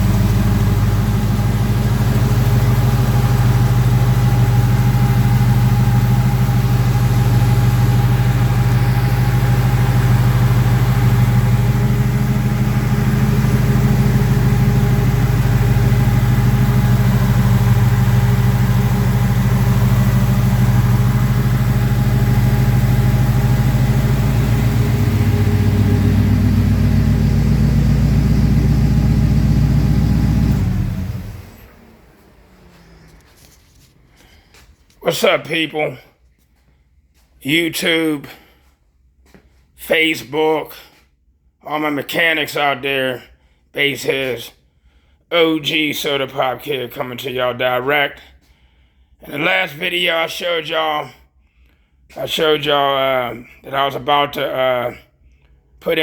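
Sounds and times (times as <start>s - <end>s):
car engine idling: 0.0s - 34.6s.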